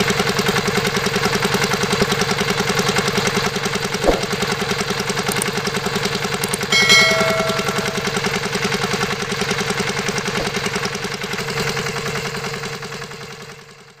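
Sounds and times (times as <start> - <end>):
small diesel engine running: 0.0 - 6.7, 8.0 - 14.0
brief ringing tone: 6.7 - 8.5.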